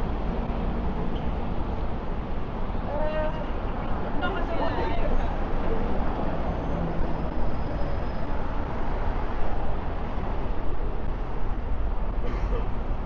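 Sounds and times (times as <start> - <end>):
city traffic rumble: 0.0 - 13.0.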